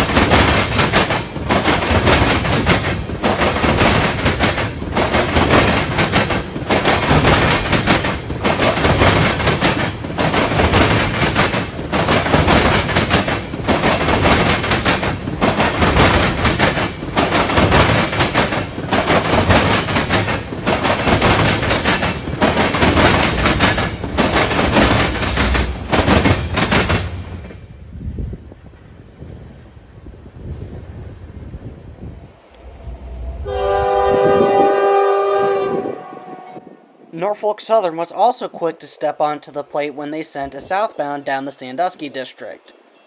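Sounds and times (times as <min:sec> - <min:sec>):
freight train wheels clattering on rails: 0:00.0 - 0:31.0.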